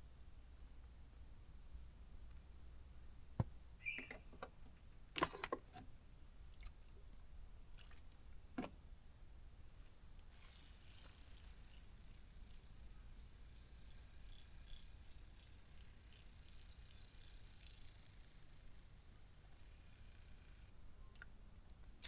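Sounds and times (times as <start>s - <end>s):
brief squeak: 3.8s - 4.5s.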